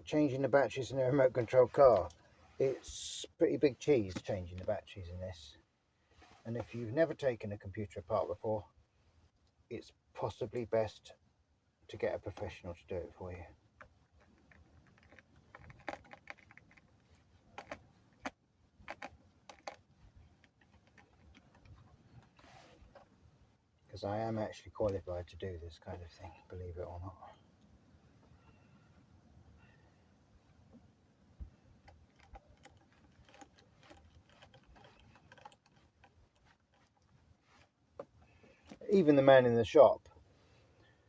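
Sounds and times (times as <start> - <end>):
laptop parts clicking and tapping: 13.8 - 16.9, 17.6 - 19.8, 20.4 - 21.8, 31.8 - 37.0.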